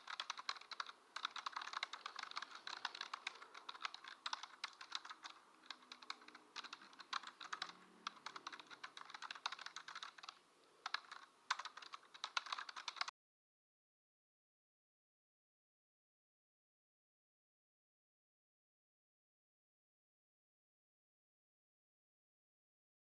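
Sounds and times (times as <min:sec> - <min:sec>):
computer keyboard typing: 0:00.0 - 0:13.1.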